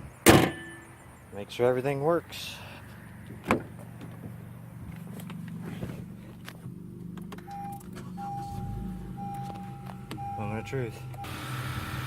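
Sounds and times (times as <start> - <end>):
car engine humming: 2.2 - 12.0
dashboard chime: 7.5 - 11.3.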